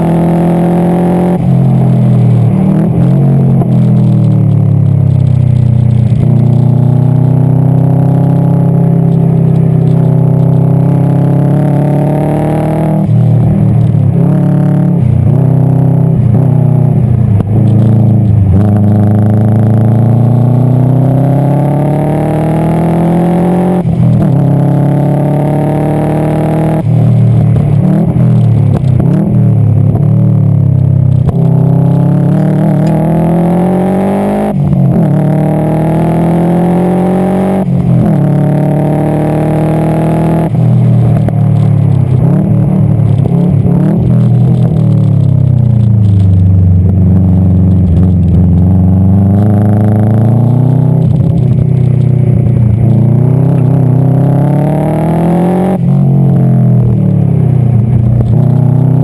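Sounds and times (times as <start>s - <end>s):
turbocharged engine revving hard: 0.0s - 3.8s, 9.9s - 16.8s, 17.8s - 29.4s, 31.2s - 45.0s, 52.8s - 57.1s.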